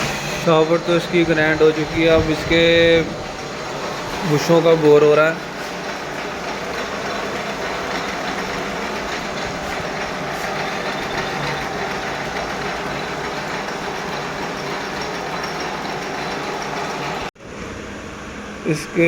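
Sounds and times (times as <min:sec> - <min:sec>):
machine tool running: 0:00.0 - 0:17.4.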